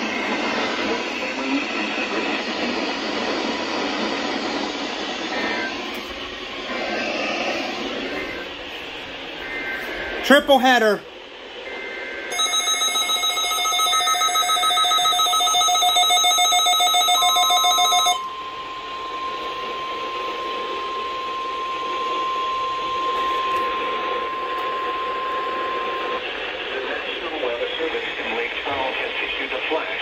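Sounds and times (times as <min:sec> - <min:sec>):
radio static hiss: 0:00.0 - 0:12.2, 0:19.1 - 0:30.0
steady attention tone: 0:05.1 - 0:27.9
pulsing electronic alert beep: 0:11.7 - 0:26.2.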